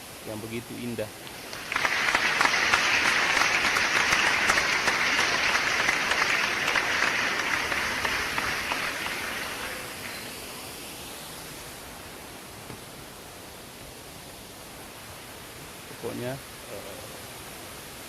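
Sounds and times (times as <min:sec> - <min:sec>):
crowd applauding: 0:01.2 - 0:10.3.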